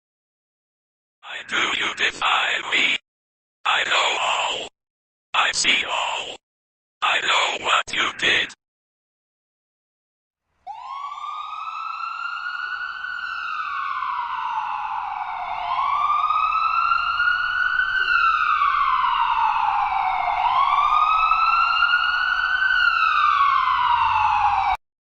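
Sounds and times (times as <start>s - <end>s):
siren wailing: 10.7s - 24.8s.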